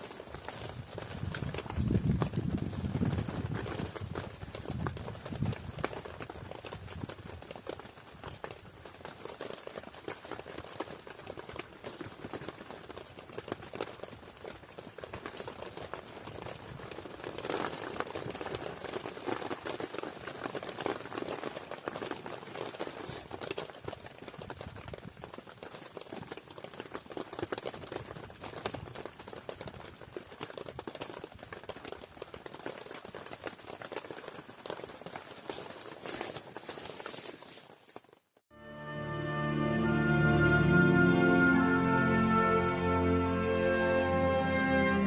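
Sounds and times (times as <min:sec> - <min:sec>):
campfire crackling and popping: 0:00.0 - 0:38.4.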